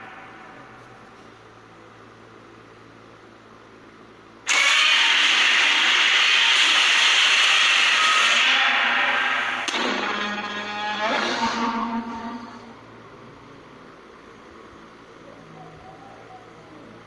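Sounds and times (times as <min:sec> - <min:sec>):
faint hum: 0:00.0 - 0:17.0
harsh noisy monster blast: 0:04.5 - 0:12.2
sharp click: 0:09.6 - 0:10.1.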